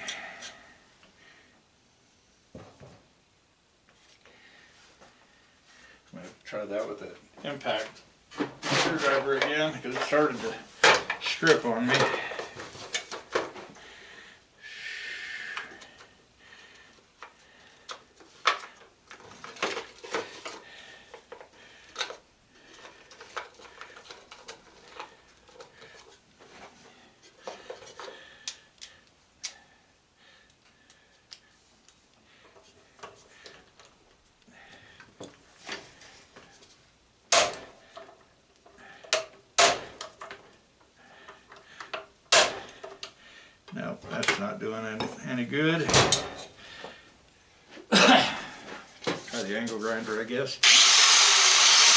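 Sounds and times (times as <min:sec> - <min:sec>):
hammer blows on impact screwdriver: 0:50.6 - 0:51.9.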